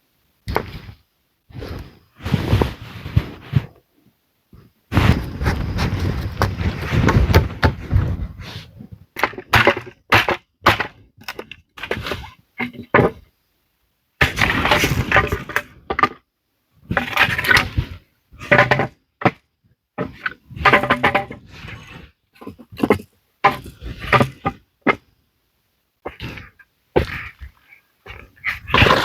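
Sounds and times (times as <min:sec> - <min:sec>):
wood cracking and breaking: 0:28.1 - 0:29.0.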